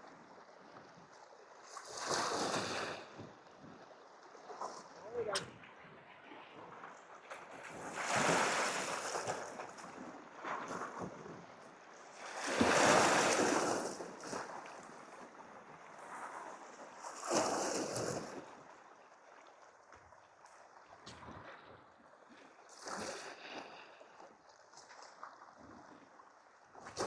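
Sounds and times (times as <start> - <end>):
waves washing against rocks: 7.7 - 9.9, 12.2 - 14.7.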